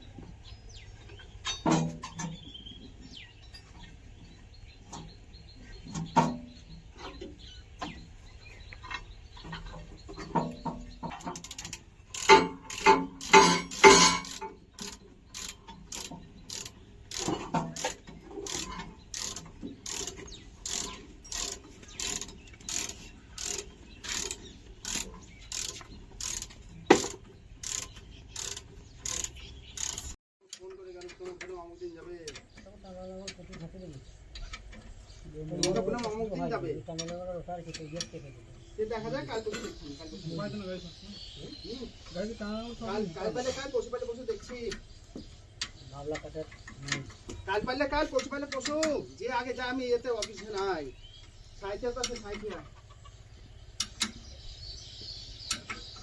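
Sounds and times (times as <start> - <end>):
mechanical clicks and knocks: 8.7 - 31.6
regular clicking: 8.7 - 36.2, 45.6 - 52.6, 53.8 - 56.0.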